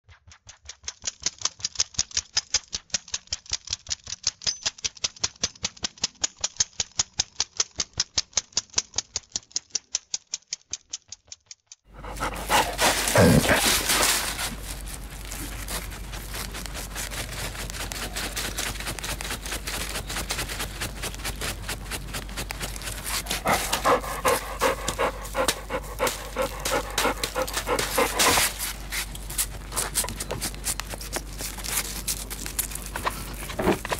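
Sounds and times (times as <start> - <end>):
dog scratching with claws: 11.9 - 33.9.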